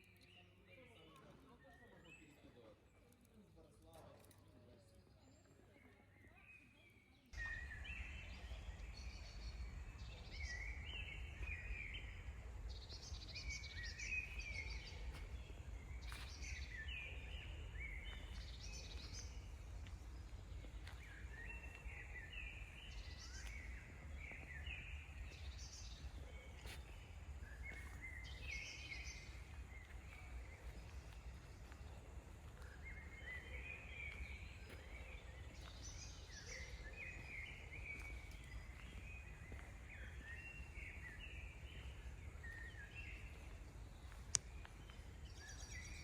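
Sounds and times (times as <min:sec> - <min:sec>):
songbird singing: 0:00.0 - 0:46.0.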